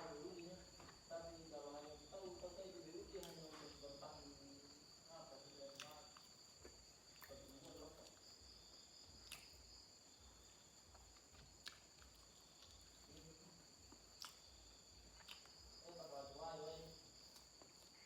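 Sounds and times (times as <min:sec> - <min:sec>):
cricket chirring: 0:00.0 - 0:18.0
chewing clicks: 0:03.2 - 0:03.6, 0:05.6 - 0:08.4, 0:09.1 - 0:09.7, 0:10.5 - 0:15.8.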